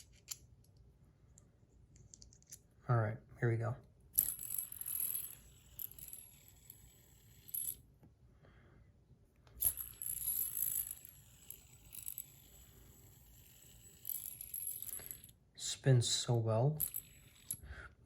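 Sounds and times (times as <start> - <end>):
metal spinner whirring: 4.2 - 7.8, 9.6 - 15.3, 16.8 - 17.7.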